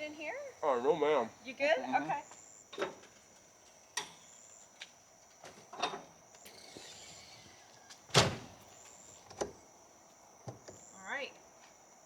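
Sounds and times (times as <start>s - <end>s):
insects trilling: 0.0s - 12.0s
vehicle door slamming: 6.5s - 9.6s.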